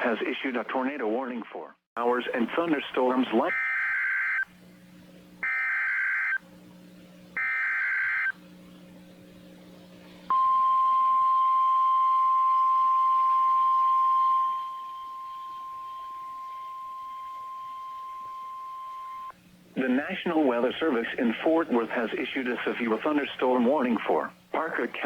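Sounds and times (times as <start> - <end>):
steady warning alarm tone: 2.5 - 4.6, 5.4 - 6.4, 7.4 - 8.4, 10.3 - 19.4
warbling digital data tones: 3.0 - 4.5, 5.4 - 6.4, 7.4 - 8.4, 10.3 - 19.3.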